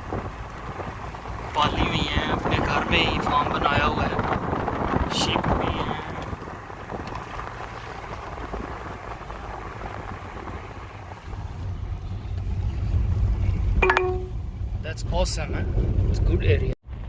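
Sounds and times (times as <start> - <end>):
wind on microphone: 0.0 - 11.4
vehicle road and engine rumble: 0.0 - 17.0.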